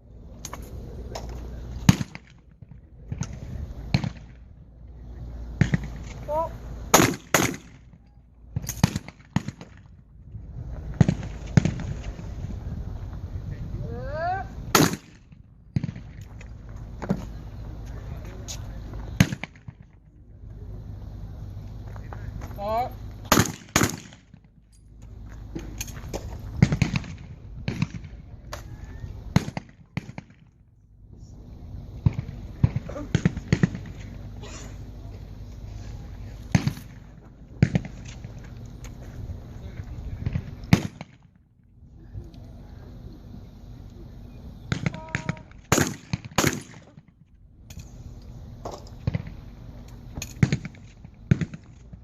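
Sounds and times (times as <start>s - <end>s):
shotguns firing: 1.8s - 2.4s, 3.1s - 4.4s, 6.9s - 9.8s, 14.7s - 16.2s, 19.2s - 19.9s, 23.2s - 24.5s, 26.1s - 28.2s, 29.3s - 30.5s, 32.0s - 34.1s, 36.5s - 38.3s, 40.2s - 41.3s, 44.7s - 47.2s, 50.2s - 52.0s.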